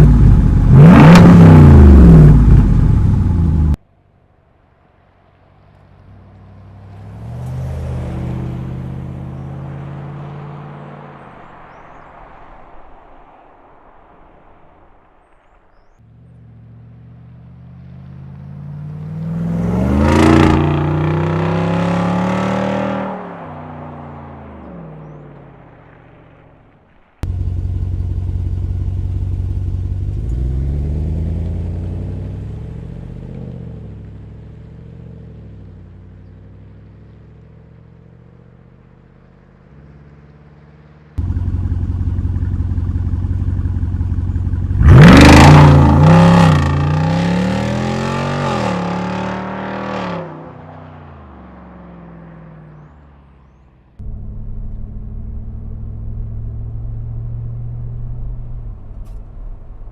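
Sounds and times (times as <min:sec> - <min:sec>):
engine exhaust roaring: 0:00.0 - 0:03.8, 0:16.1 - 0:22.8, 0:27.2 - 0:33.2, 0:41.1 - 0:50.2, 0:54.0 - 0:59.9.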